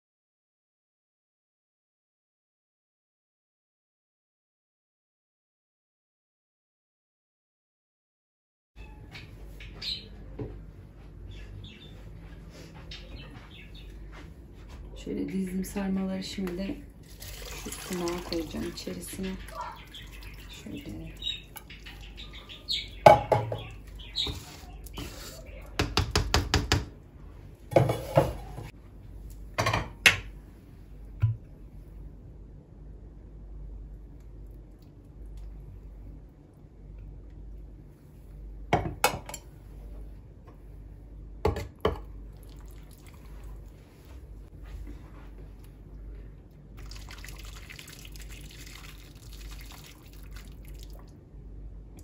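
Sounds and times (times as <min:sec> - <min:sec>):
water running: 0:15.8 - 0:25.2, 0:42.3 - 0:43.9, 0:46.8 - 0:51.2
water dripping: 0:16.4 - 0:24.2, 0:42.3 - 0:43.4, 0:46.8 - 0:51.2
cooking pot and utensils clattering: 0:23.1 - 0:25.2, 0:27.7 - 0:28.7.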